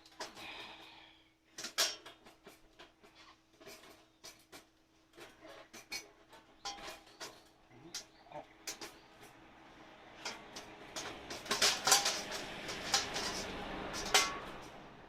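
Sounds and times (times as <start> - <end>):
metal panels clinking: 1.5 - 15.0
metal scraping: 1.7 - 15.0.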